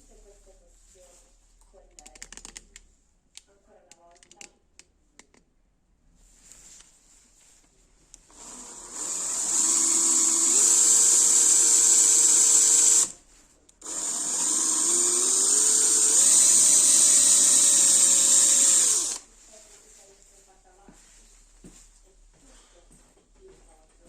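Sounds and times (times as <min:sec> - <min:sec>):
electric drill whining: 0:08.3 - 0:13.2, 0:13.8 - 0:19.3.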